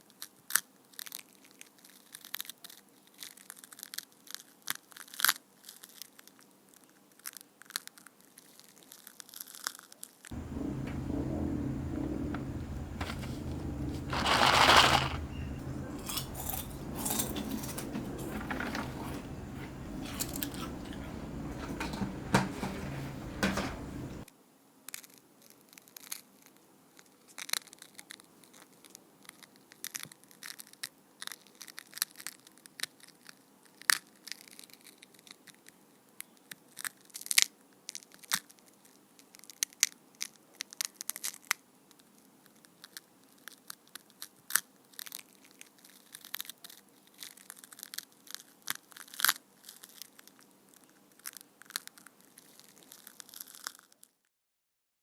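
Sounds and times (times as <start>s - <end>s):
steady low hum: 10.3s - 24.2s
eggshell cracking and crunching: 51.2s - 54.0s.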